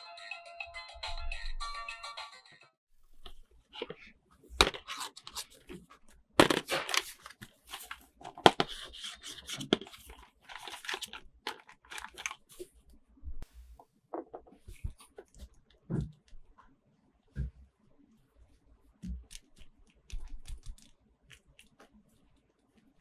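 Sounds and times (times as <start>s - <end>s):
packaging tearing and crinkling: 6.5s - 12.5s.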